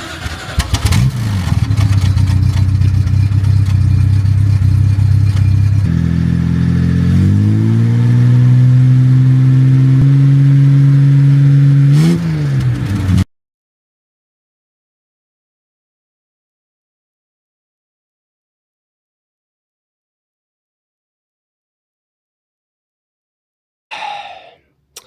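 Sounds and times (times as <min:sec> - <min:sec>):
car engine idling and revving: 0:00.0 - 0:13.3.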